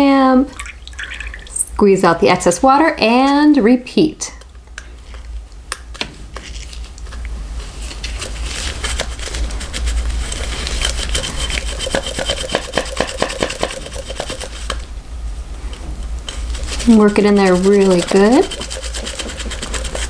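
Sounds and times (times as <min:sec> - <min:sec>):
scratchy rubbing with small clicks: 0:16.3 - 0:20.0.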